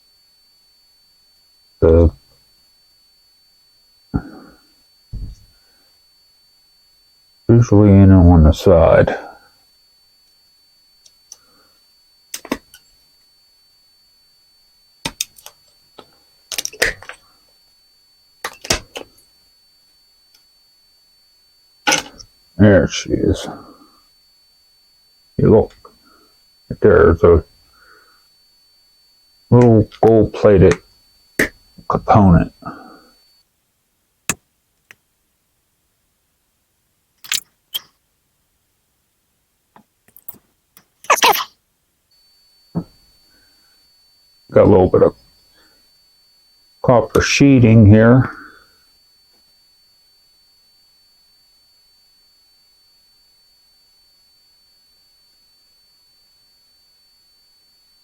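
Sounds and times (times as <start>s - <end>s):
plastic parts snapping and clinking: 16.5s - 17.2s
sharp clicks of metal parts: 16.5s - 17.2s, 21.9s - 22.2s, 37.2s - 37.9s.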